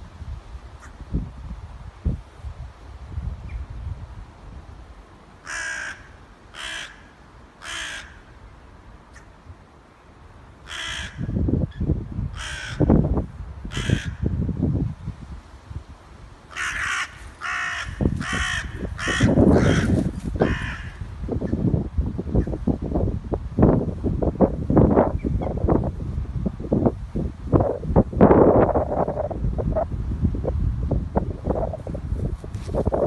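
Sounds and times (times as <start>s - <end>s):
crow cawing: 5.4s - 8.3s, 10.7s - 11.2s, 12.4s - 12.9s, 13.7s - 14.2s, 16.5s - 21.0s.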